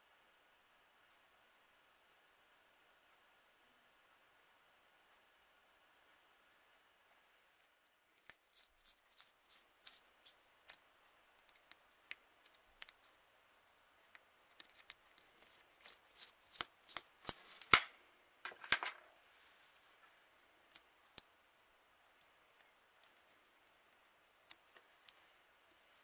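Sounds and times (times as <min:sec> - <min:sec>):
small parts clicking and tapping: 0:07.6 - 0:13.2, 0:14.0 - 0:19.1.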